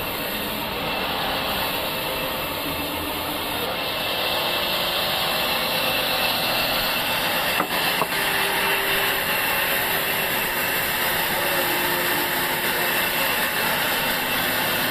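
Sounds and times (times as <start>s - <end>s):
sawmill machinery running: 0.0s - 14.9s
faint high whine: 5.3s - 14.9s.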